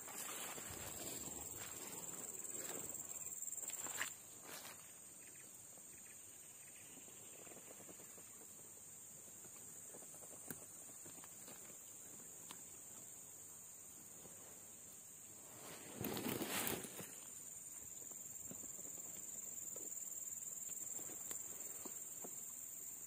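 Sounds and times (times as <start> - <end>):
rustling footsteps: 0.0 - 5.0
insects droning: 0.0 - 23.0.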